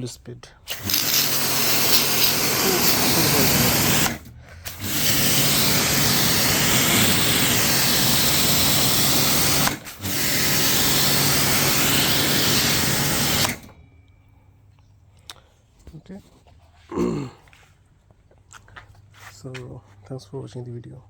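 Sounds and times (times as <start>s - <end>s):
water jet hissing on paving: 0.7s - 13.7s
pressure washer motor hum: 0.7s - 13.9s.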